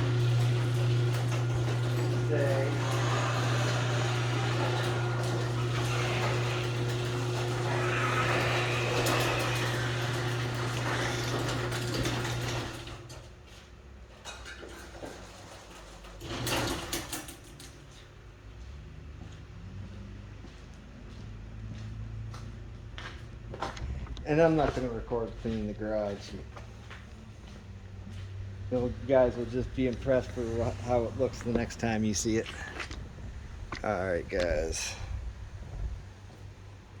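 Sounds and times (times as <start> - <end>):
steady machine hum: 0.0 - 13.3.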